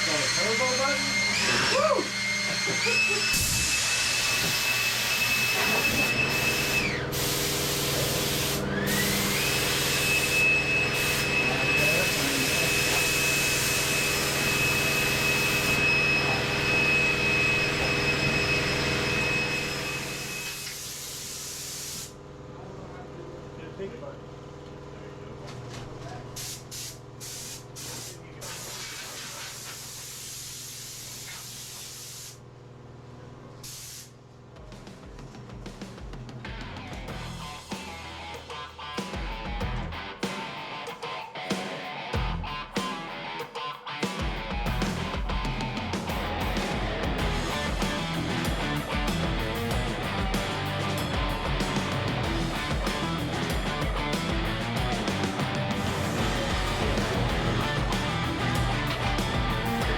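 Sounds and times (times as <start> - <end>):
electric blower whining: 0.0 - 20.8, 44.1 - 59.9.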